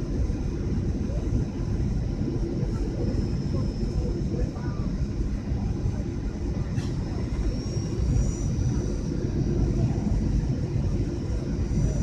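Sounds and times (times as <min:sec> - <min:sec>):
airliner engine and airflow rumble: 0:00.0 - 0:12.0
faint high whine: 0:00.0 - 0:12.0.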